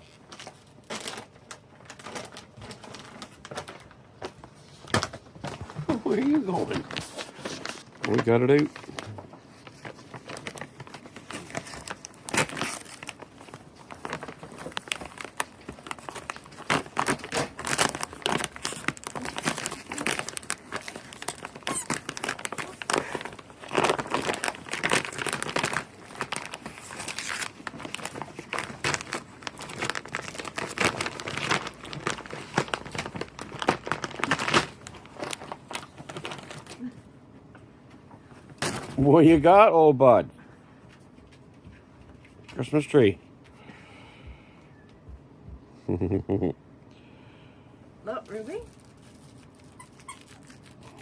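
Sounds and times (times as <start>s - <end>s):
wrapping paper crinkling and tearing: 0.0s - 36.9s, 48.1s - 51.0s.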